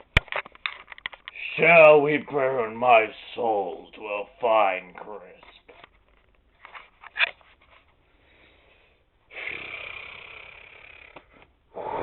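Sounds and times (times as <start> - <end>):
man exhaling: 11.7 - 12.0.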